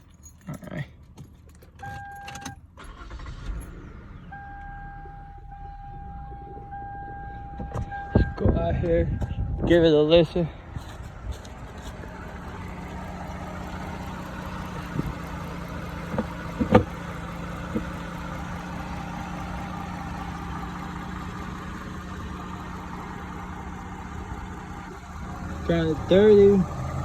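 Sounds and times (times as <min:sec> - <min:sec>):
car engine idling: 0:02.1 - 0:27.0
engine knocks or clicks: 0:10.8 - 0:23.4.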